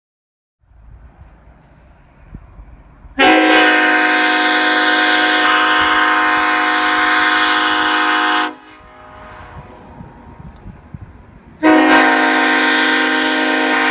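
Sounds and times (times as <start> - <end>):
locomotive air horn blast: 3.2 - 13.9.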